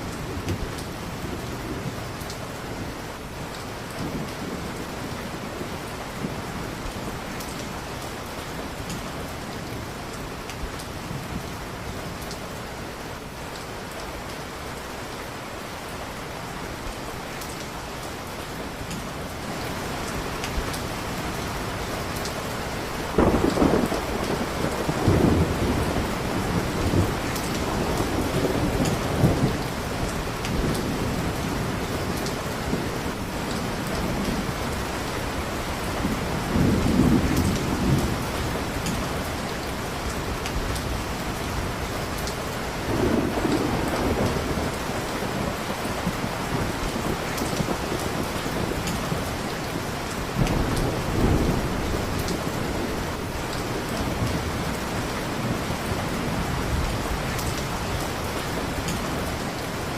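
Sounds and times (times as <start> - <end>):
heavy rain: 0.0 - 59.9
distant thunder rumbling: 22.9 - 41.9, 42.8 - 59.5.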